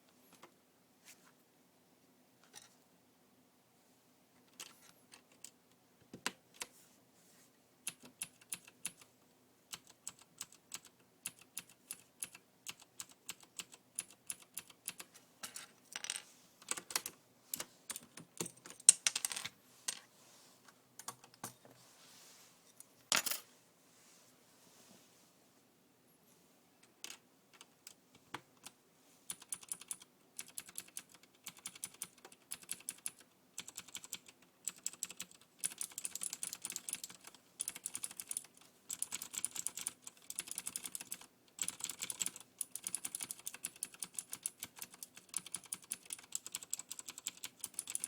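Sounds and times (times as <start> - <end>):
mechanical keyboard typing: 7.9 - 9.1, 9.7 - 15.1, 16.6 - 17.2, 28.6 - 48.0.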